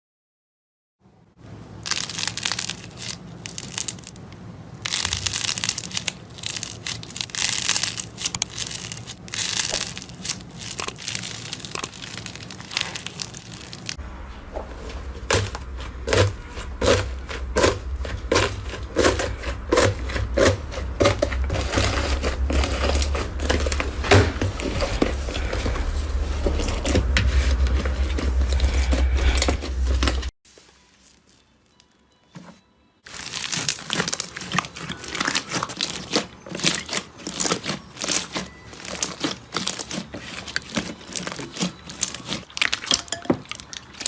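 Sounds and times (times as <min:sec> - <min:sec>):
slime squishing by hand: 0:01.8 - 0:30.6, 0:33.1 - 0:44.0
low hum: 0:04.5 - 0:30.4.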